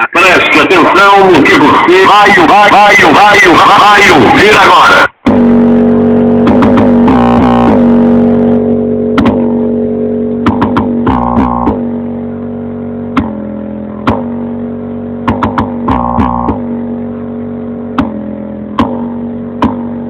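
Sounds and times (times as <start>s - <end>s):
loud bass music from car speakers: 0.0s - 20.0s
sharp percussive hits: 6.4s - 7.9s, 9.1s - 9.6s, 10.4s - 12.0s, 13.1s - 16.9s, 17.8s - 20.0s.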